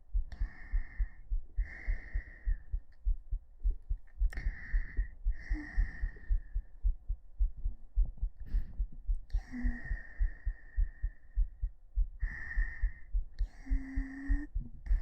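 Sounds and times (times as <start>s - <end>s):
heartbeat thumps: 0.0s - 15.0s
soft hissing breath noise: 0.3s - 2.9s, 4.2s - 6.9s, 8.3s - 15.0s.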